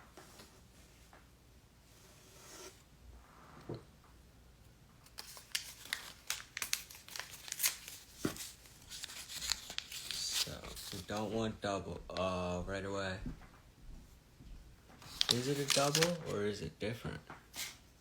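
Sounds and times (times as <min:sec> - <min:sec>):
plastic wrapper tearing and crinkling: 0:05.1 - 0:11.3, 0:15.0 - 0:16.4.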